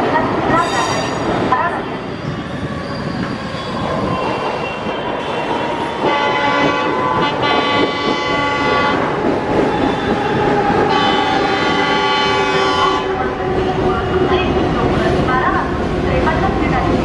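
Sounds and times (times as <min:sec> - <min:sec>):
passing train running noise: 0:00.0 - 0:17.0
train horn chord blasts: 0:06.0 - 0:09.0, 0:10.9 - 0:13.1.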